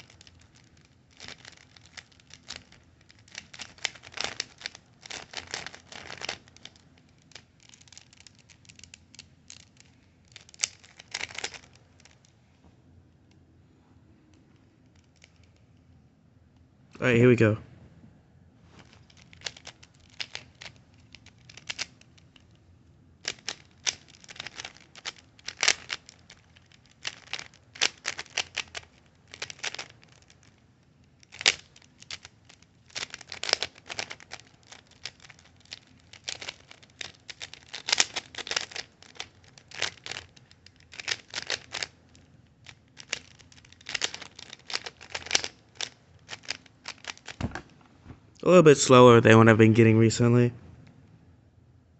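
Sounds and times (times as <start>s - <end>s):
plastic puzzle cube clicking: 0.0s - 12.3s, 18.9s - 22.6s, 23.2s - 47.7s.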